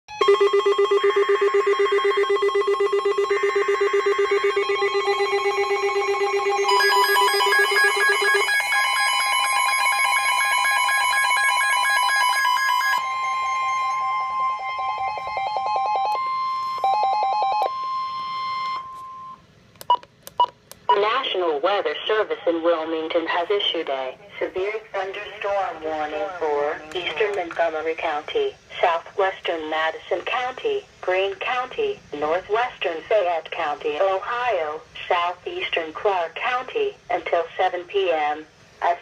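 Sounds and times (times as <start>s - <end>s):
steady alert tone: 0.1s - 19.4s
electronic alarm beeps: 0.1s - 21.0s
low pulsing buzz-tone: 0.2s - 11.4s, 12.9s - 19.4s.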